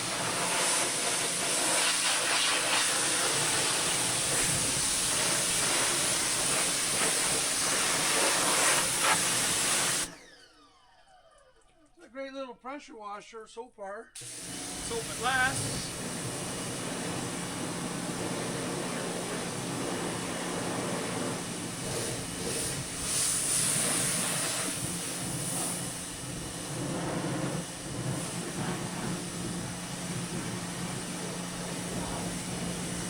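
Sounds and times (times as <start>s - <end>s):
water jet spraying: 0.0s - 10.1s, 14.2s - 33.0s
pressure washer motor hum: 0.0s - 10.4s, 14.2s - 33.0s.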